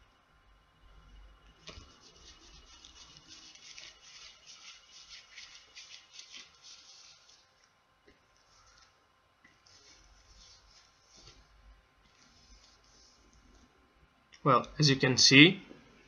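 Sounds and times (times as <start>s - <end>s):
rubbing strokes on smartphone: 1.6s - 7.7s, 8.4s - 13.8s.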